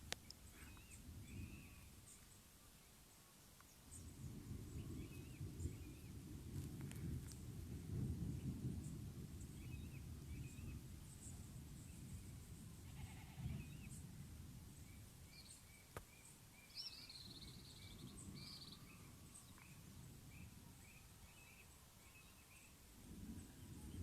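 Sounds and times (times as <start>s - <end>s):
distant animal calls: 12.8s - 13.9s
small bird chirps: 15.4s - 19.8s.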